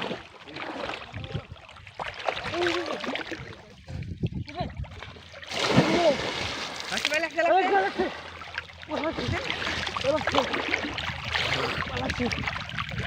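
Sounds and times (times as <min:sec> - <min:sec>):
water sloshing and splashing: 0:00.0 - 0:13.0
loud splash: 0:05.4 - 0:08.2.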